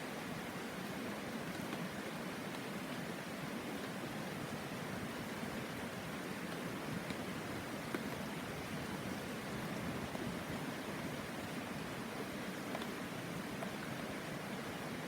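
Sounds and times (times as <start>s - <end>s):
faint ticks: 12.7s - 13.0s.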